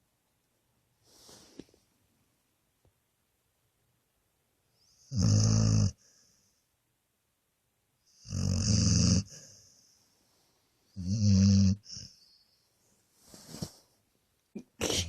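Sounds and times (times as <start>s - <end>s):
dog snoring: 4.9s - 6.2s, 8.1s - 9.7s, 11.0s - 12.4s.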